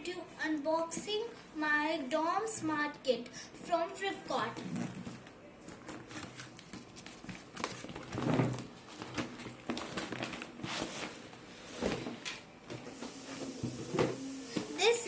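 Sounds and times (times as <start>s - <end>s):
packaging crinkling: 5.7s - 11.2s.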